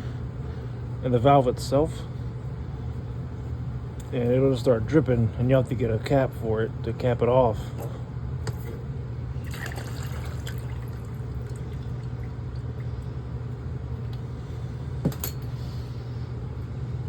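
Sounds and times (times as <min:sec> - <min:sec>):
low steady hum: 0:00.0 - 0:17.0
water running into a bucket: 0:09.4 - 0:13.0.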